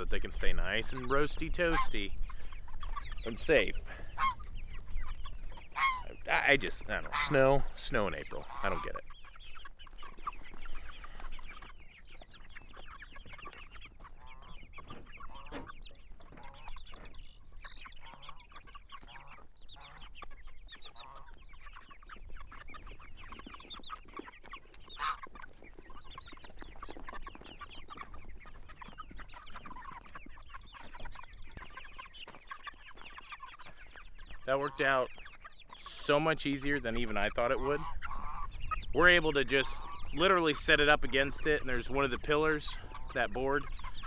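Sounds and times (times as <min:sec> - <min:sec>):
chickens clucking: 0:00.0 - 0:44.0.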